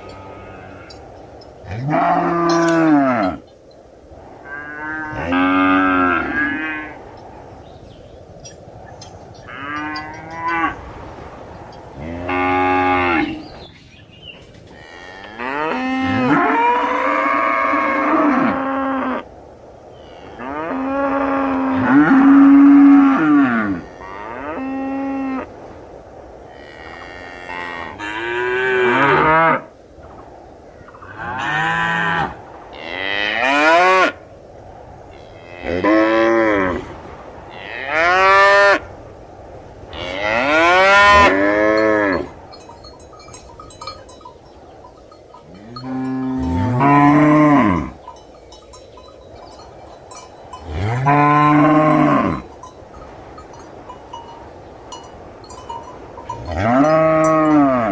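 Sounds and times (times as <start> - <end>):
cattle mooing: 1.7 - 3.4, 9.4 - 10.8, 12.0 - 13.6, 40.0 - 42.3, 45.4 - 48.0, 50.6 - 52.5.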